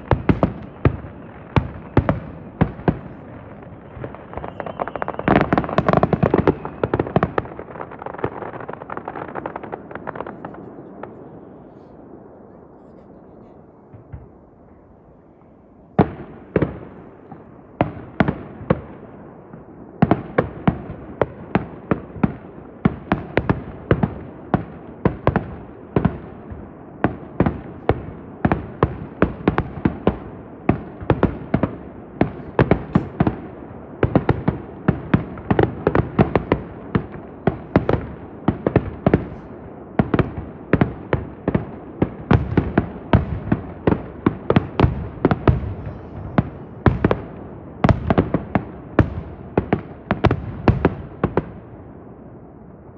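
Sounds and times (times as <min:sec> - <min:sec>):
firework shell bursts: 0:32.4 - 0:33.3.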